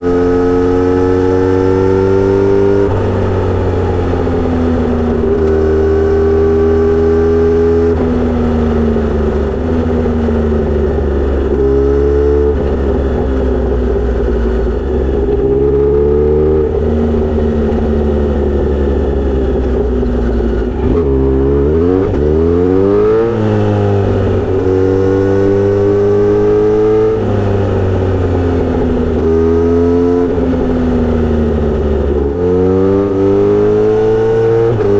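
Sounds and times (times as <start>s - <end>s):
motorcycle engine revving: 0.0s - 34.9s.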